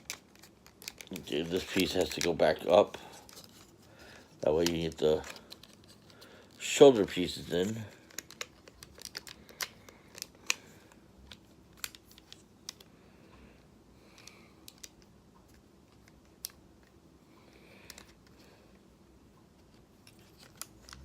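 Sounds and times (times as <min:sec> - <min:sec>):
plastic toy parts clicking: 0:00.0 - 0:02.4, 0:07.6 - 0:10.6.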